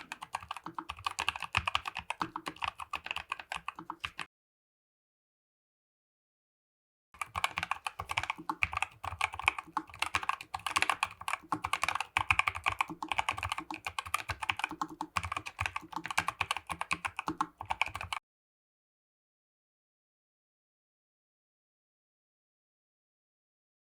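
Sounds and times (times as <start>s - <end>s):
mechanical keyboard clacks: 0.0s - 4.2s, 7.2s - 18.2s.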